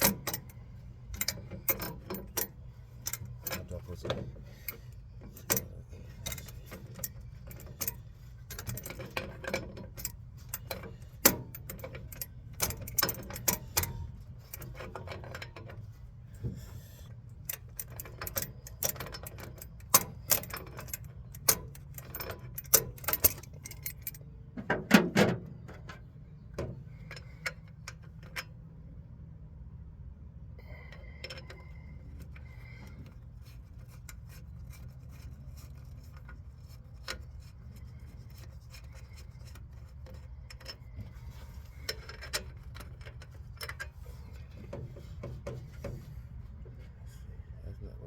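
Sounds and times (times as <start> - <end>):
metal tools clinking: 0.0 - 15.9, 17.4 - 24.3
metal clatter: 0.0 - 16.8, 31.0 - 47.2.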